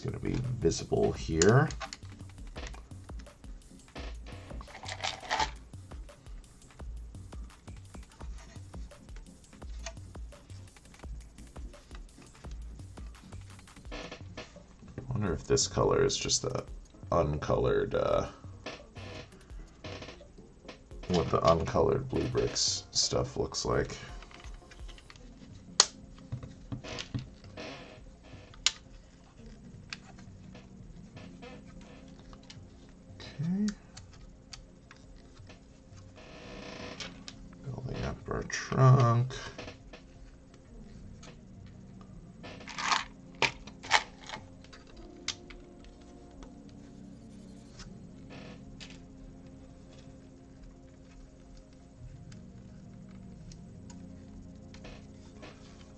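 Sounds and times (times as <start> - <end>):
quiet background music: 0.0 - 55.9
loose plastic pieces rustling: 4.6 - 5.5
plastic bricks clicking together: 4.6 - 5.5, 42.6 - 45.4.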